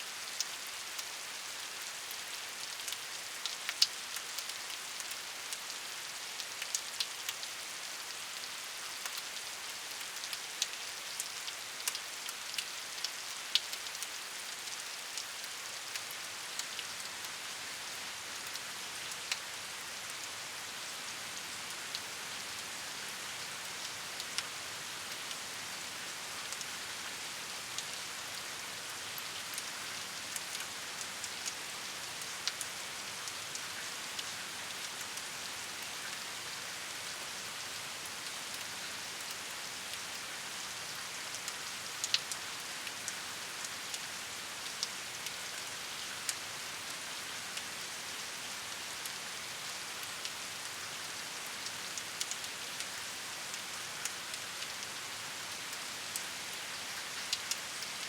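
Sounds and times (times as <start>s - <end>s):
raindrops ticking on a surface: 0.0s - 58.0s
steady rain hiss: 0.0s - 58.0s.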